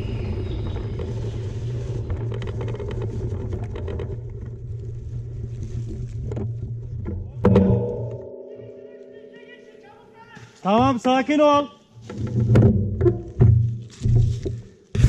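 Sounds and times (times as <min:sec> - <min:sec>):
wind and tyres rumbling: 0:00.0 - 0:07.4.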